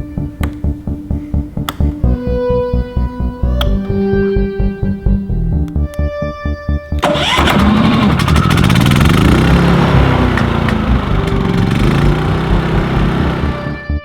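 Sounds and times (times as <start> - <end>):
generator engine running: 7.0 - 14.0.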